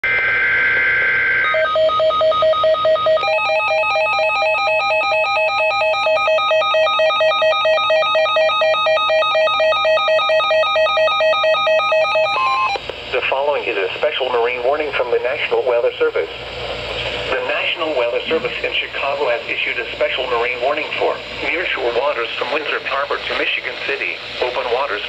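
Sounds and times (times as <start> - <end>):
rapid electronic alert beeping: 0.0 - 12.8.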